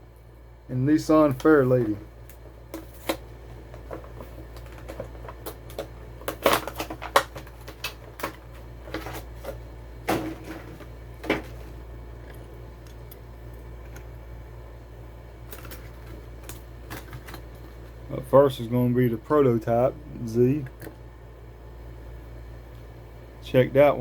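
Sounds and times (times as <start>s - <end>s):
steady low hum: 0.0s - 24.0s
plastic packaging crackling: 1.3s - 13.0s, 15.4s - 18.0s.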